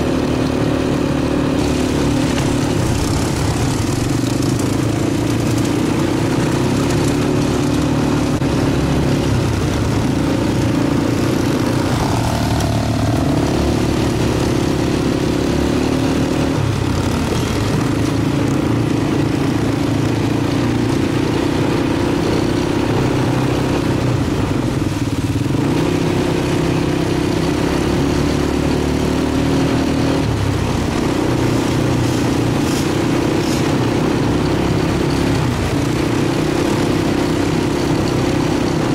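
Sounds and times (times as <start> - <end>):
quad bike engine running: 0.0 - 38.9.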